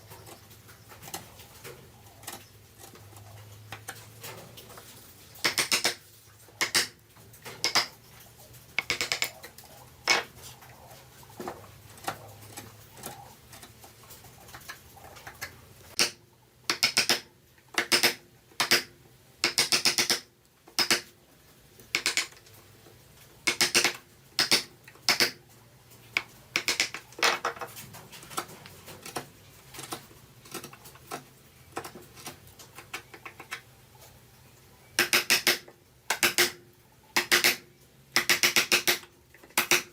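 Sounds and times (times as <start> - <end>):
hand tools cutting wood: 5.4 - 6.0, 6.6 - 7.0, 17.8 - 21.1, 35.0 - 36.6, 37.2 - 37.6, 38.2 - 39.9.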